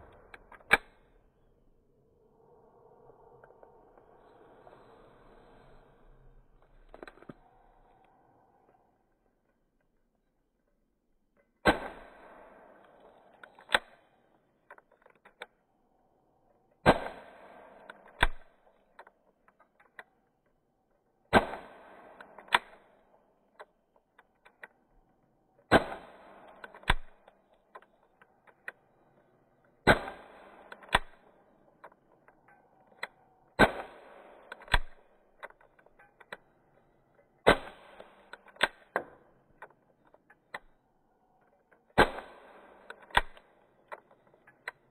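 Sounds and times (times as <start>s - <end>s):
gun click: 0.1s - 1.0s, 12.8s - 14.0s, 26.5s - 28.8s, 30.7s - 36.5s, 37.4s - 44.9s
pistol shots with rattle: 11.6s - 15.5s, 16.8s - 20.0s, 21.2s - 24.7s, 25.6s - 28.8s, 29.7s - 36.4s, 37.3s - 40.8s, 41.7s - 44.9s.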